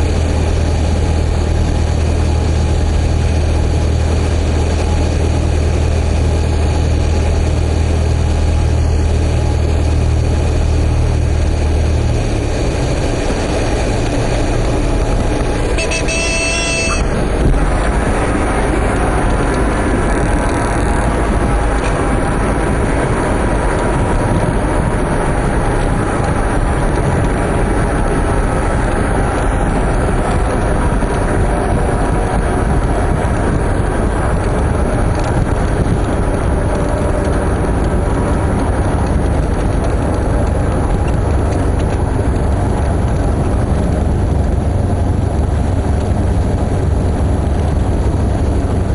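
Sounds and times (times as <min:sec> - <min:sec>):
propeller plane engine droning: 0:00.0 - 0:48.9
wind noise: 0:00.0 - 0:48.9
high-pitched warning horn: 0:15.6 - 0:17.4.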